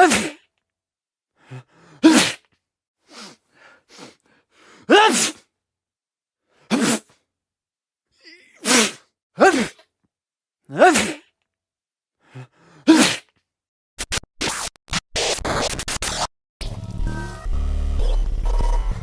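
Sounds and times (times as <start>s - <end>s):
person coughing and sneezing: 0.0s - 0.4s, 2.0s - 2.5s, 4.9s - 5.4s, 6.7s - 7.1s, 8.2s - 9.9s, 10.7s - 11.3s, 12.9s - 13.3s.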